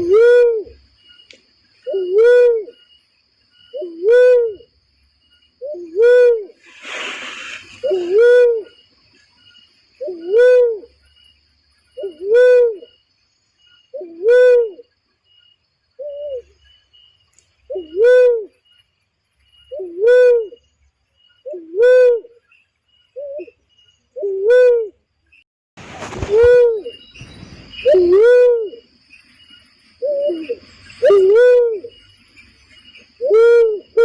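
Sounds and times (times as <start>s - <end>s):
dove hooting coo: 0.0s - 0.8s, 1.8s - 2.8s, 3.7s - 4.7s, 5.6s - 6.6s, 7.7s - 8.8s, 10.0s - 11.0s, 12.0s - 12.9s, 13.9s - 14.9s, 16.0s - 16.5s, 17.7s - 18.5s, 19.7s - 20.6s, 21.4s - 22.4s, 23.2s - 23.6s, 24.2s - 25.0s, 26.2s - 27.0s, 27.8s - 28.9s, 30.0s - 32.0s, 33.2s - 34.0s.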